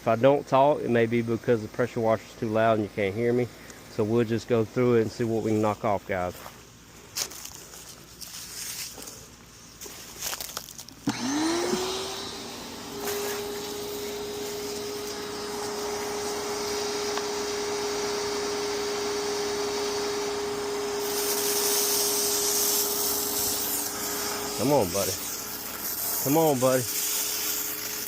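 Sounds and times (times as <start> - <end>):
pressure washer motor whine: 11.0 - 28.0
water spray hiss: 12.9 - 16.8, 21.0 - 28.0.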